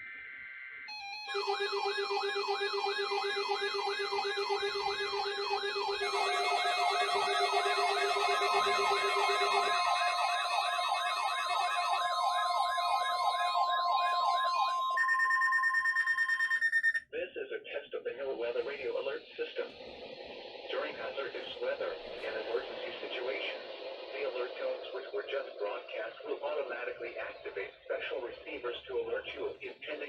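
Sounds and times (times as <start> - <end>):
electronic siren alert tone: 0.0 - 17.0
steady low hum tone: 18.1 - 30.0
lower sweeping tone: 18.7 - 28.4.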